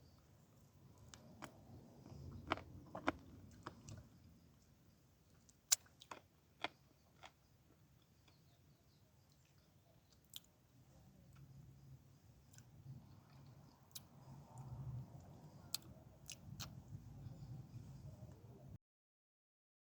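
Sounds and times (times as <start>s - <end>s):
chewing and biting: 1.2s - 4.1s, 5.5s - 7.4s.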